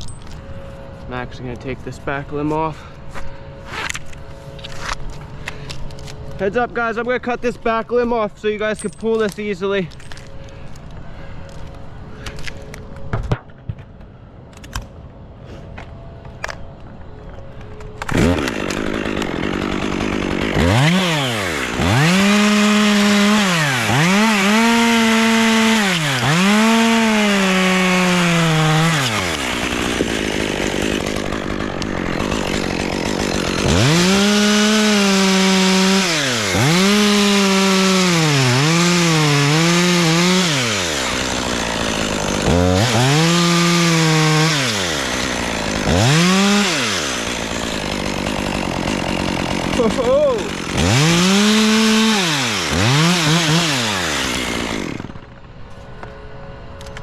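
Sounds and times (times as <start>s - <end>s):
chainsaw cutting wood: 18.0s - 55.5s.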